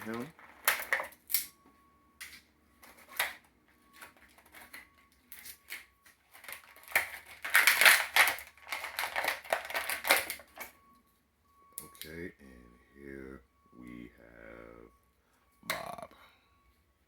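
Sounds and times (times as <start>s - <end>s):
plastic packaging crackling: 0.0s - 1.5s, 2.2s - 10.7s.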